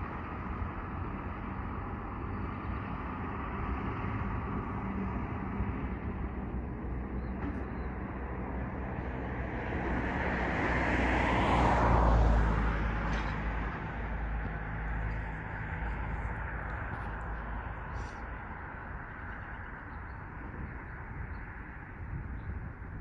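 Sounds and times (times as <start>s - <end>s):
low engine hum: 0.0s - 23.0s
vehicle passing by: 8.3s - 19.6s.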